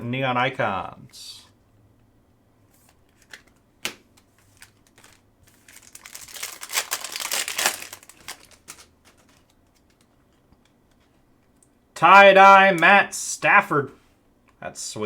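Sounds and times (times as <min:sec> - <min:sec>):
card pack wrapper crinkling: 0:04.2 - 0:10.2.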